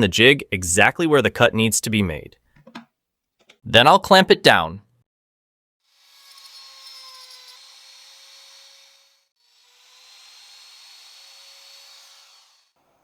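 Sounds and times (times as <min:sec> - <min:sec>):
router whining: 0:05.9 - 0:12.8.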